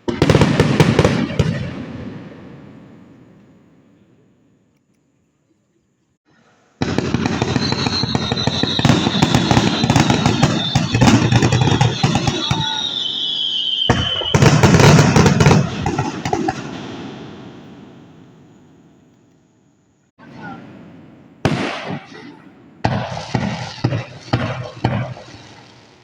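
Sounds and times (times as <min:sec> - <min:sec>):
fireworks bangs and crackling: 0:00.0 - 0:04.0, 0:06.8 - 0:19.1, 0:20.2 - 0:26.0
firework whistle falling in pitch: 0:07.3 - 0:15.8.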